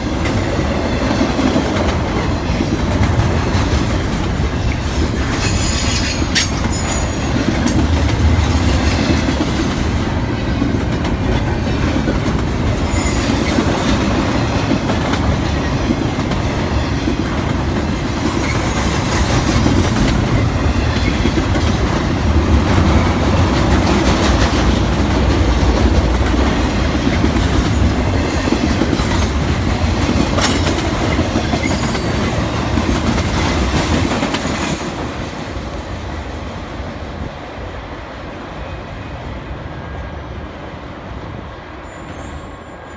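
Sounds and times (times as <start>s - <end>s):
freight train rumbling and rattling: 0.0s - 42.9s
wheels clicking over rail joints: 10.5s - 34.9s
high wheel squeals: 12.8s - 14.6s, 31.6s - 32.5s.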